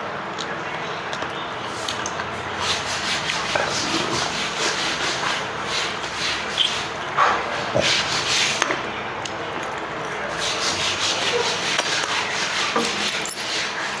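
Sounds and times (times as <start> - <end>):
chewing: 0.2 - 10.6
hands scraping through food: 1.1 - 14.0.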